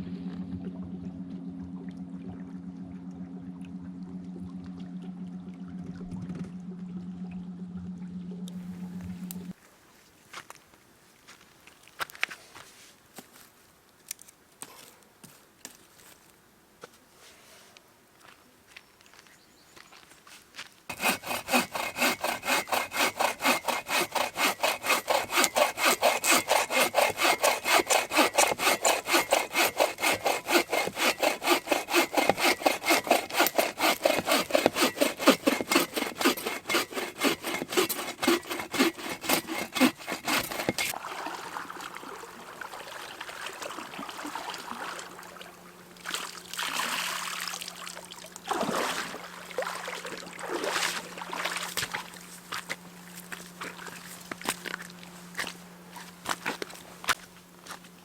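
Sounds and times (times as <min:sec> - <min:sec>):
hand saw cutting wood: 0:20.9 - 0:41.0.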